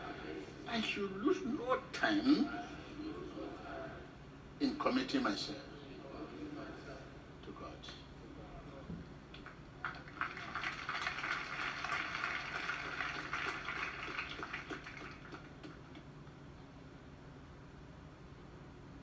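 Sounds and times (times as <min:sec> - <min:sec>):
crowd clapping: 0:09.4 - 0:16.0.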